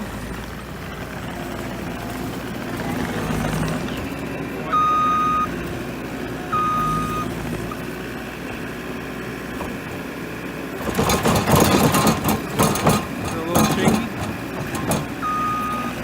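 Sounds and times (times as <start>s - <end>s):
loader engine running: 0.0s - 16.0s
reverse alarm beeps: 4.7s - 5.5s, 6.5s - 7.3s, 15.2s - 16.0s.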